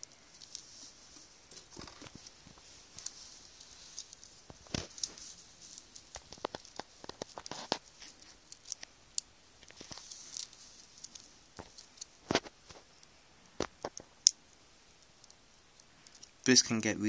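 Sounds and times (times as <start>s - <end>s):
light rustling: 0.0s - 8.9s, 9.6s - 14.0s
plastic parts clicking and tapping: 5.8s - 14.4s.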